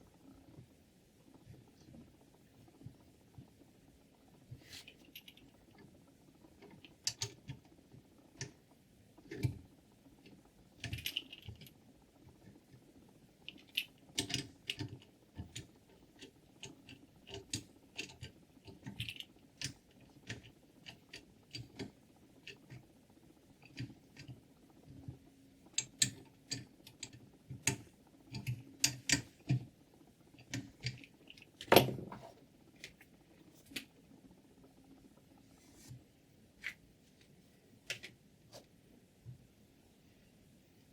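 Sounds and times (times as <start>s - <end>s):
faint steady hum: 0.0s - 40.9s
small hard parts clicking: 13.4s - 22.9s.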